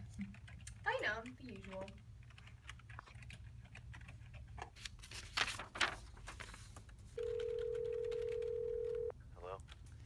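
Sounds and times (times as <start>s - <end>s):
computer keyboard typing: 0.3s - 4.5s, 7.2s - 9.1s.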